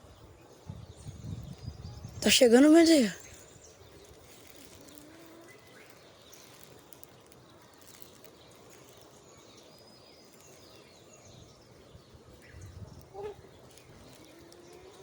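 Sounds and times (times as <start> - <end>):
faint bird calls: 13.0 - 15.0.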